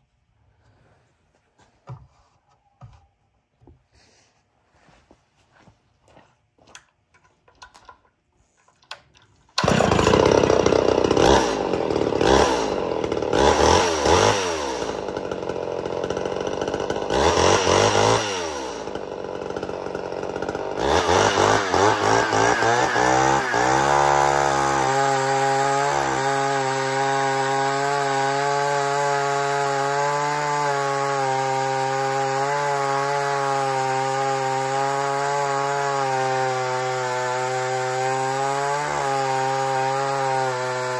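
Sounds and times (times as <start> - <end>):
chainsaw engine revving: 9.6 - 40.9.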